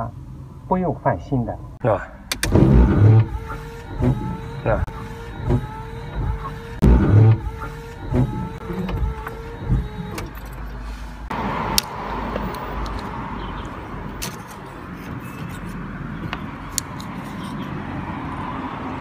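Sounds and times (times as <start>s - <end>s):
wiper motor whine: 2.3s - 11.0s
wiper blades scraping glass: 14.2s - 17.7s.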